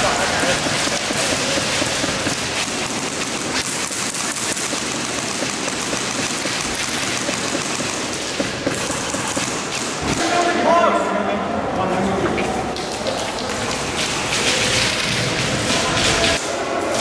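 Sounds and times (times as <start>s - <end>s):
airsoft guns firing rapidly: 0.0s - 10.2s
sharp cracks: 0.0s - 10.3s.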